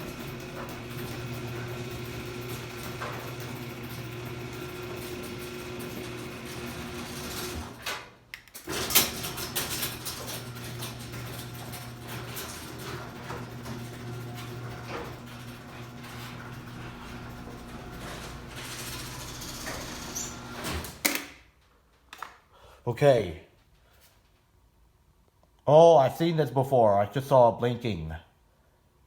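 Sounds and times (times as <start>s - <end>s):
garage door motor humming: 0.0s - 21.1s.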